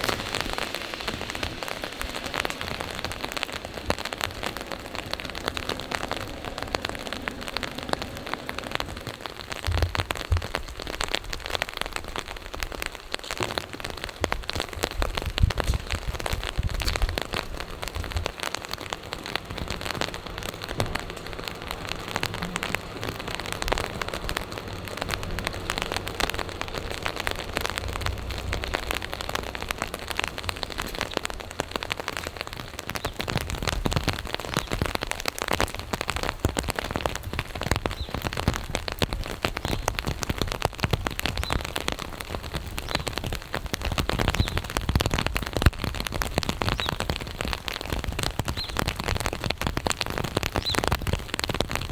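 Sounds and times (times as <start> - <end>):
steady rain falling: 0.0 - 51.9.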